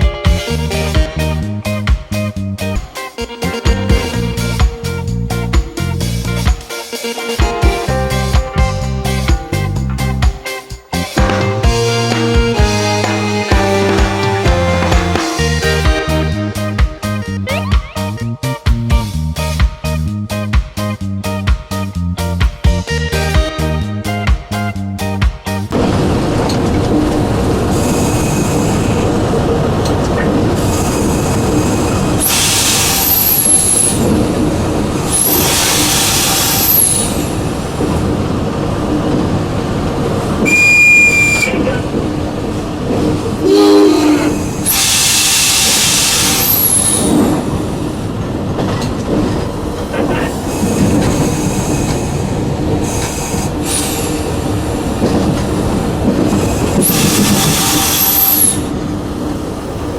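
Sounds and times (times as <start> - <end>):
train horn blast: 0.0 - 1.8, 2.8 - 9.5, 10.4 - 17.4, 22.9 - 24.2, 35.0 - 37.5, 40.4 - 42.0, 43.4 - 47.6, 56.3 - 58.7
train running noise: 0.0 - 59.9
high hiss and squeal: 44.1 - 47.4, 56.3 - 58.7.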